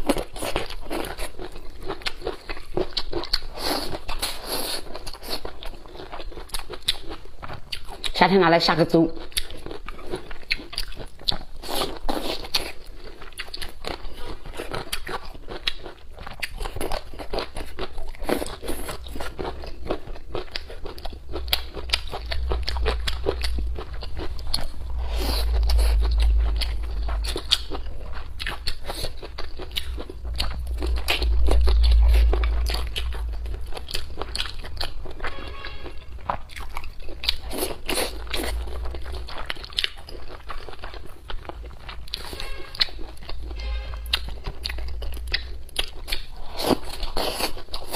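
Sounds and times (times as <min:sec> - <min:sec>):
chewing with crunches: 0:00.0 - 0:47.9
low rumble: 0:20.5 - 0:47.2.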